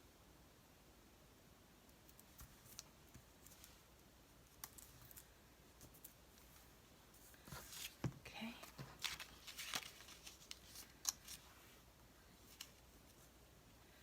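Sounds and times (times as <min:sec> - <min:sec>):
paper rustle: 0:04.8 - 0:11.6
paper clicks and handling: 0:07.4 - 0:11.4.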